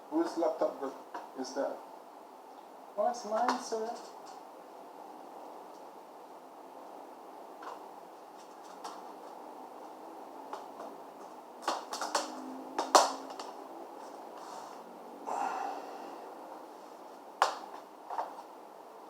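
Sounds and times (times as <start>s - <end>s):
scraping rustle: 7.6s - 10.0s.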